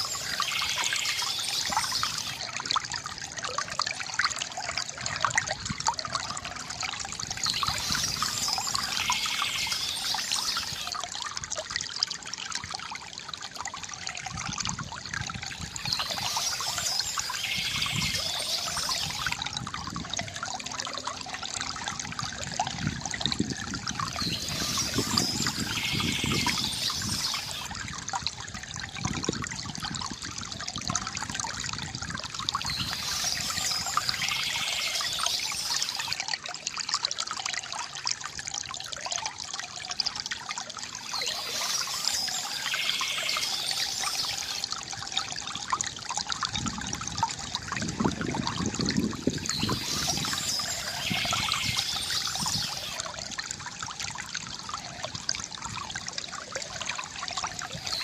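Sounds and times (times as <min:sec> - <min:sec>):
fountain water trickling and splashing: 0:00.0 - 0:58.0.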